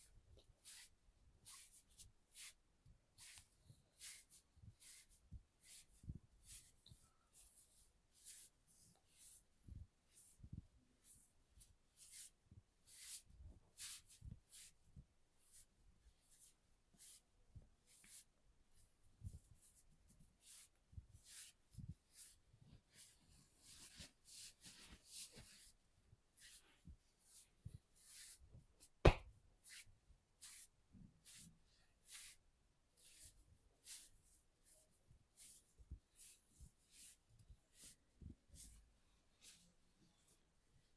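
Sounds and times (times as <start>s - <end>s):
hands rubbing skin: 26.4s - 32.4s.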